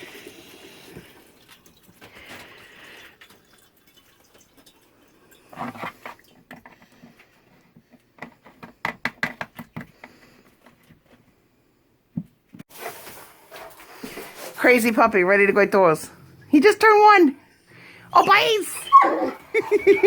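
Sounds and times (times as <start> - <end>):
tap water running into bucket: 0.0 - 7.3.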